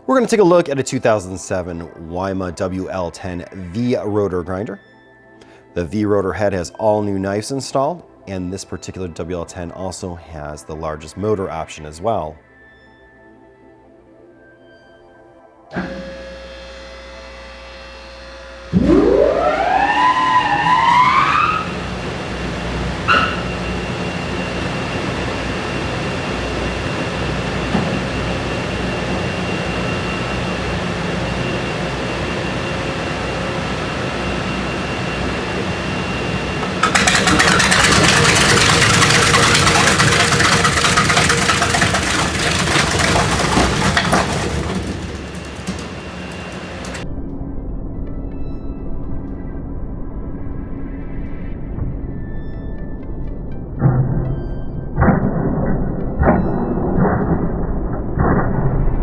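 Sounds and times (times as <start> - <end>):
shredder motor whine and hum: 15.7 - 47.0
loud rough shredding noise: 18.1 - 47.0.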